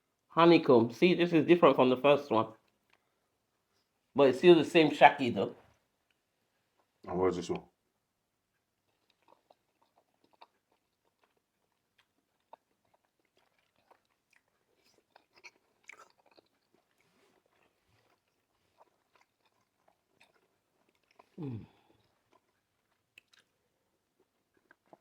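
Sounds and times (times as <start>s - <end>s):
person chewing meat: 8.5s - 25.0s.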